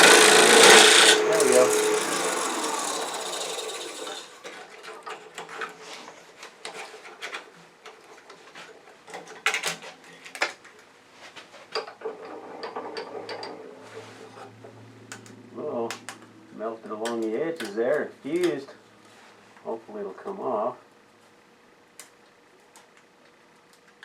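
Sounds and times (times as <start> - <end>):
lathe cutting and spinning: 0.0 - 4.4.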